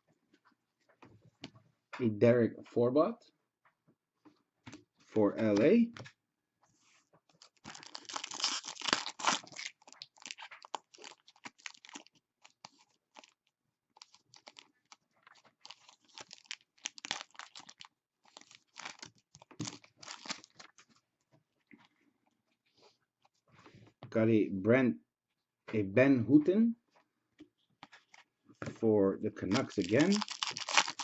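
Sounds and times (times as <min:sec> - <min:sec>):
cards and packaging crinkling: 0:07.3 - 0:21.0, 0:29.4 - 0:31.0.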